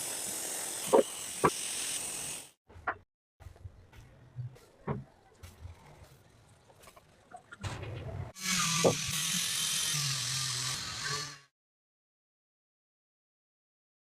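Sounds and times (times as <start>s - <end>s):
high-speed electric tool hissing: 0.0s - 2.6s, 8.4s - 11.5s.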